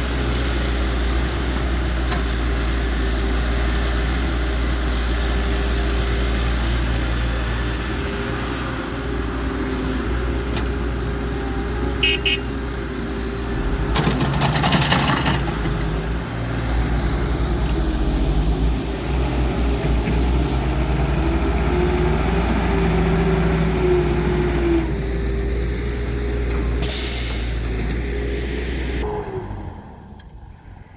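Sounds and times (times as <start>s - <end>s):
diesel engine running: 0.0s - 30.4s
double horn toot: 12.0s - 12.7s.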